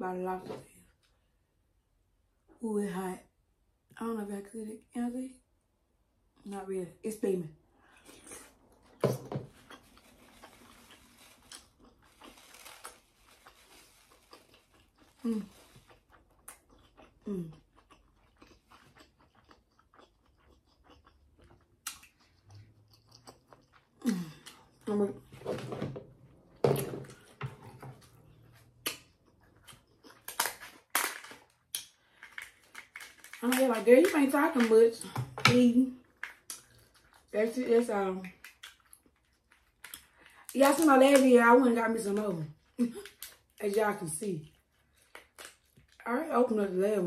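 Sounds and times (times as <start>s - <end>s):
person biting and chewing food: 8.0s - 24.8s, 26.8s - 33.4s.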